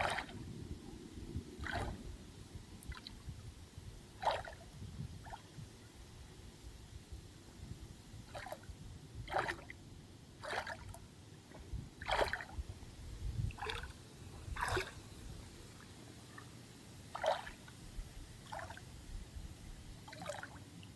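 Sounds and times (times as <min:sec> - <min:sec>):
water splashing: 0:00.0 - 0:00.4, 0:01.6 - 0:02.0, 0:04.2 - 0:04.6, 0:09.3 - 0:09.7, 0:10.4 - 0:12.7, 0:13.5 - 0:16.4, 0:17.1 - 0:17.8, 0:18.4 - 0:18.8, 0:20.0 - 0:20.6.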